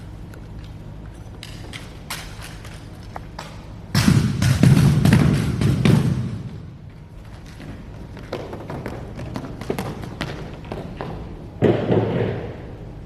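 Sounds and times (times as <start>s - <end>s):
burst of rapid knocks: 3.9s - 6.6s.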